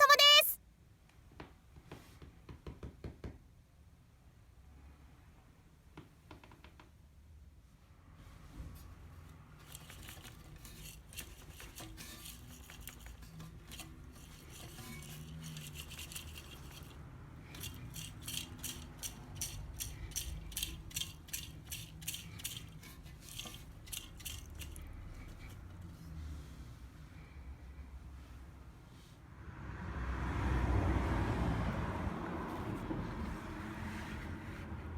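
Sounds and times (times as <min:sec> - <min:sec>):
ratchet wrench clicking: 0:14.2 - 0:24.8.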